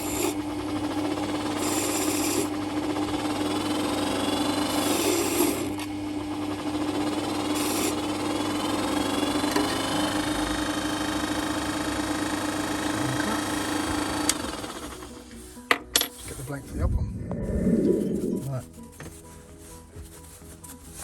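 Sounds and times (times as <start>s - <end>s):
motor humming: 0.0s - 15.4s.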